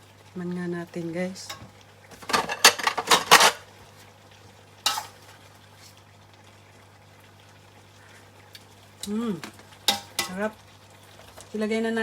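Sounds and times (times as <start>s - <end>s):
shrimp sizzling in a pan: 0.0s - 12.0s
utensil clinking against pan: 4.9s - 5.1s, 9.9s - 10.4s.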